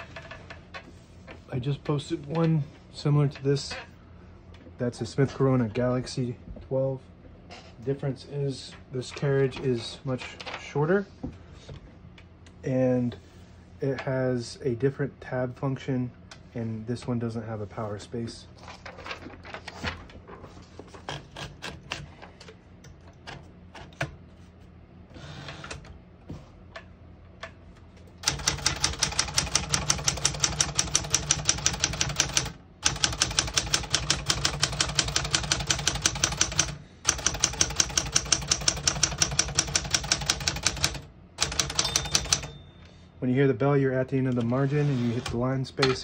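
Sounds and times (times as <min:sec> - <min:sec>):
typewriter mechanism clicks: 0:28.2 - 0:42.6
typewriter typebar strikes: 0:28.2 - 0:42.6.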